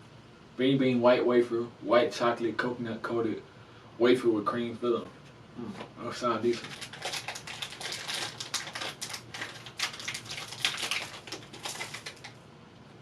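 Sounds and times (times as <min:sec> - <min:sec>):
plastic wrapper crinkling: 0:06.4 - 0:12.4.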